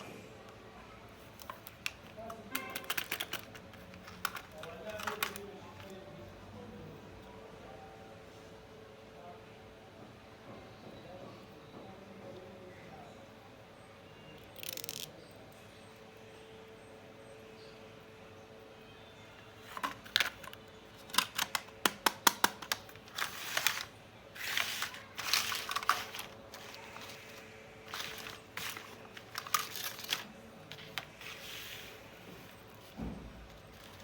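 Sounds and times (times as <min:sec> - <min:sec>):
packaging crinkling: 0:01.2 - 0:05.5, 0:19.7 - 0:34.0
small plastic clicks: 0:01.4 - 0:05.5.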